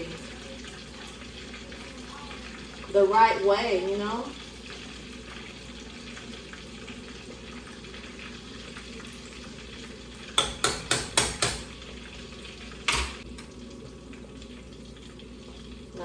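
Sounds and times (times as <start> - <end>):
fish deep-frying in hot grease: 0.0 - 16.0
utensil tapping a pot: 10.3 - 11.8.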